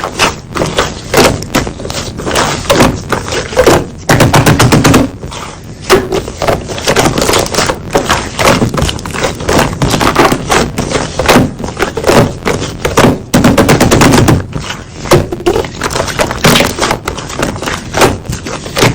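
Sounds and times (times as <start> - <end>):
slime crackling and popping: 6.8 - 14.6.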